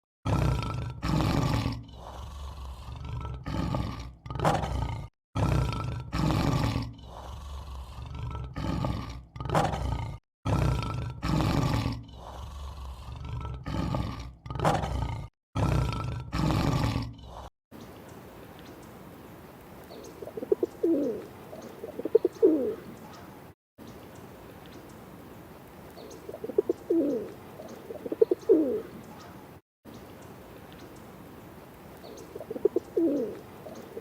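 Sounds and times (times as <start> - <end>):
faint outdoor background: 0.0 - 34.0
lion roaring: 0.2 - 17.5.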